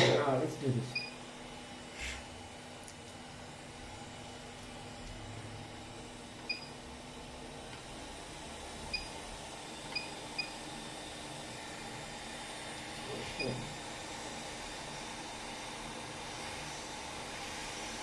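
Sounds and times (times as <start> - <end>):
hot air hissing: 1.8 - 2.5, 7.3 - 18.0.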